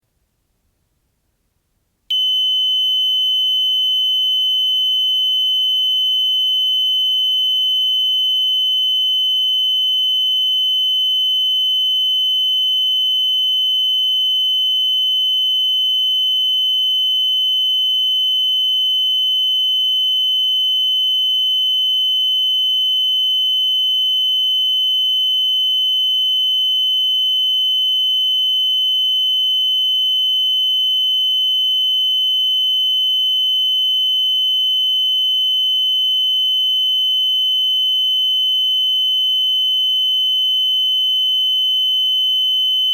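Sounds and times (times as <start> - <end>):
heart monitor flatline tone: 2.1 - 18.7.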